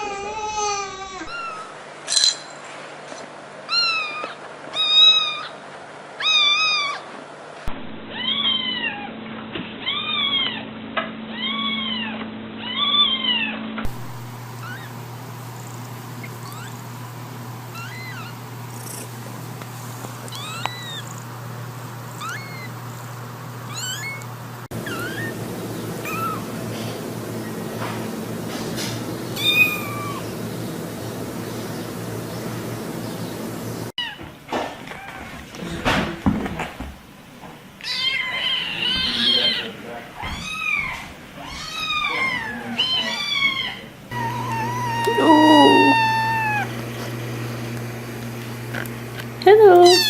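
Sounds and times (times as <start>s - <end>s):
cats meowing: 3.7s - 5.6s, 6.2s - 7.1s, 8.1s - 9.2s, 9.8s - 10.7s, 11.3s - 13.6s, 14.6s - 15.0s, 15.6s - 16.8s, 17.7s - 19.1s, 20.2s - 21.3s, 22.1s - 22.8s, 23.7s - 25.4s, 26.0s - 26.5s, 29.4s - 30.3s, 37.8s - 46.9s, 49.6s - 50.0s.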